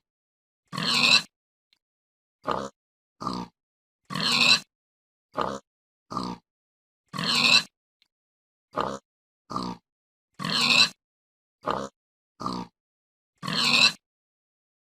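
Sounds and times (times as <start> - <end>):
pig grunting and oinking: 0.7 - 1.3, 2.4 - 4.7, 5.3 - 6.5, 7.1 - 7.7, 8.7 - 11.0, 11.6 - 12.8, 13.4 - 14.0.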